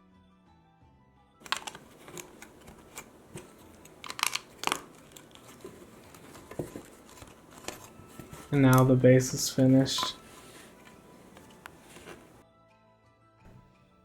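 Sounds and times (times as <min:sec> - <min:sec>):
plastic bricks clicking together: 0:01.4 - 0:09.0
rustling: 0:01.4 - 0:12.4.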